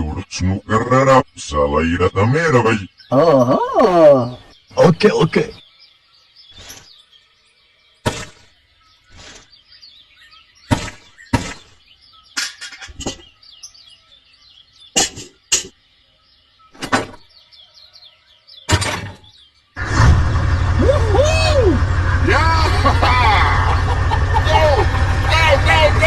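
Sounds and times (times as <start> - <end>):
faint bird chirping: 0.0 - 20.1.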